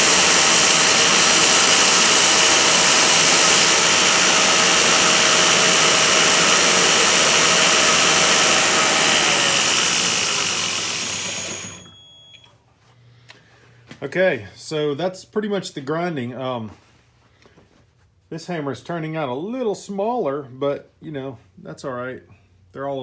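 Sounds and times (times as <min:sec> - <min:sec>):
power grinder running: 0:00.0 - 0:12.0.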